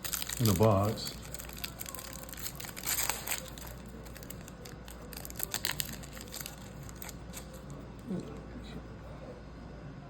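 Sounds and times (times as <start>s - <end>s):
foil wrapper crinkling: 0.0s - 7.8s.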